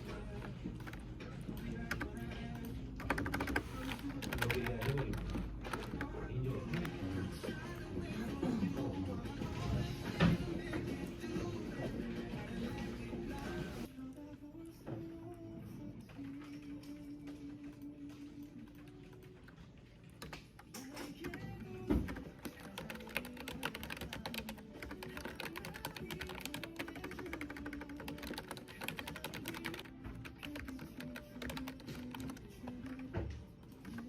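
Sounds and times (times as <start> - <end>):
typing on keyboard: 0.0 - 7.2, 16.2 - 34.0
background music: 0.0 - 34.0.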